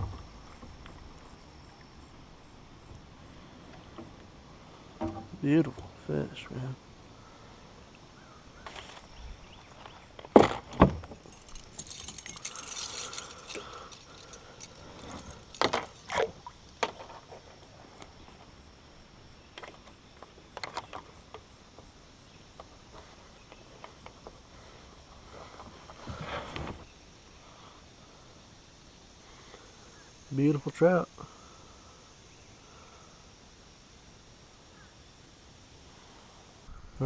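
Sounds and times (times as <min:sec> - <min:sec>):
fishing gear knocks and clicks: 0:09.7 - 0:17.3
metallic jangle: 0:11.1 - 0:16.3.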